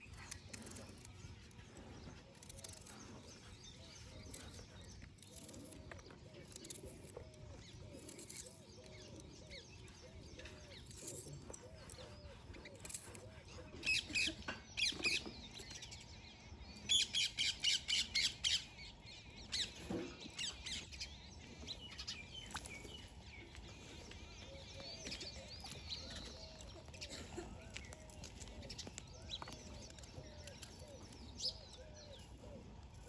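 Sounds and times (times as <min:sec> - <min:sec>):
birds chirping and twittering: 0:00.0 - 0:33.0.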